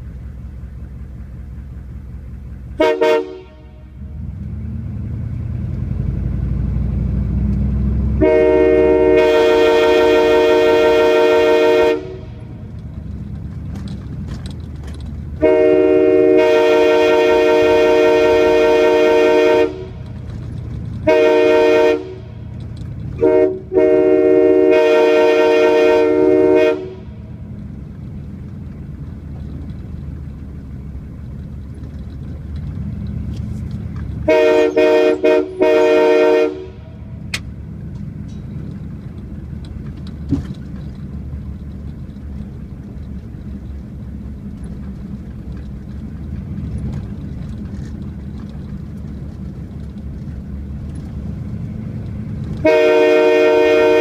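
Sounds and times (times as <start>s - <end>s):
low steady rumble: 0.0s - 54.0s
locomotive air horn blasts: 2.8s - 4.2s, 8.1s - 12.7s, 15.4s - 20.2s, 21.0s - 27.4s, 34.2s - 37.4s, 52.6s - 54.0s.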